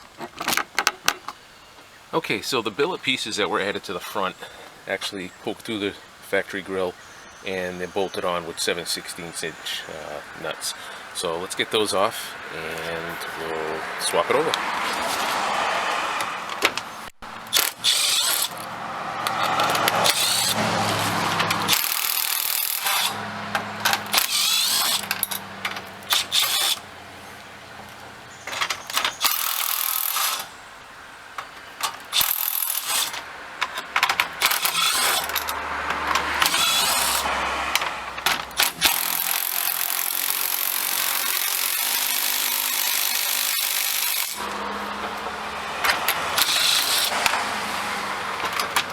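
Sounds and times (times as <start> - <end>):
clicks and metal rattles: 0.0 - 1.4, 16.2 - 26.9, 27.8 - 30.5, 31.3 - 47.5, 48.2 - 48.9
cordless drill running: 17.5 - 18.7, 19.3 - 23.2, 23.9 - 25.5, 26.1 - 26.8, 29.2 - 30.5, 32.1 - 33.2, 34.4 - 35.5, 36.4 - 37.6, 38.6 - 44.8, 45.6 - 48.0.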